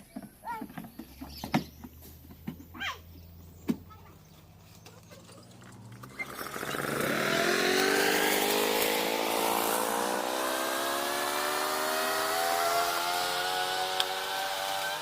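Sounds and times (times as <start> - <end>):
lawn mower engine starting: 5.5 - 15.0.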